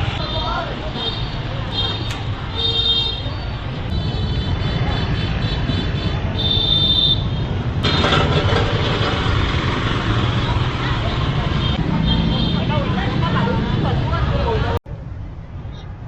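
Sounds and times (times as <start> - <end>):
car horns beeping: 0.0 - 8.5
busy street traffic: 0.0 - 16.0.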